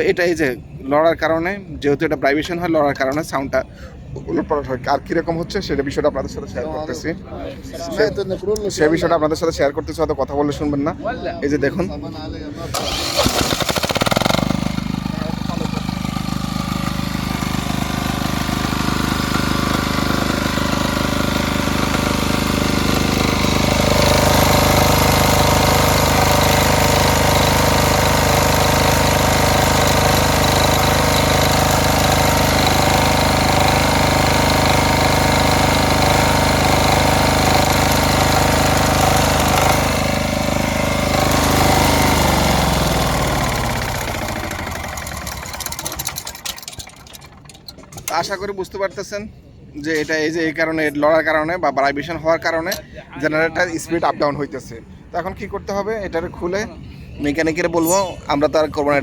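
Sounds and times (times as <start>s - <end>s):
diesel generator engine running: 12.7s - 48.4s.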